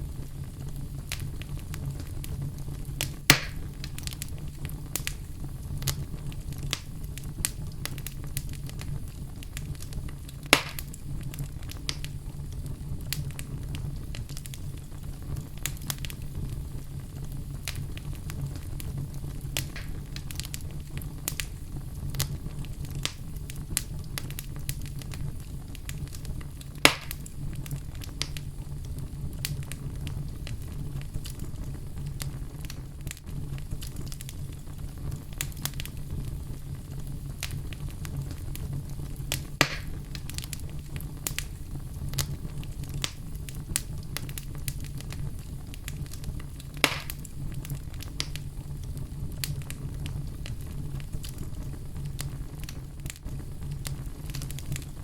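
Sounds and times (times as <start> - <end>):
loud fire pops: 0.0 - 55.0
wood fire crackling: 0.0 - 55.0.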